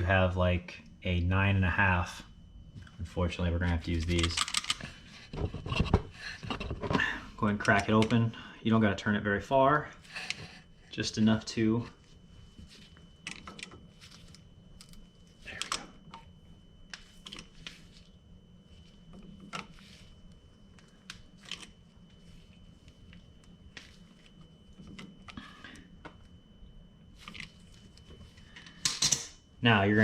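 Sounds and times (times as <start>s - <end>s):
wrench clicks and rustles: 3.9s - 4.9s.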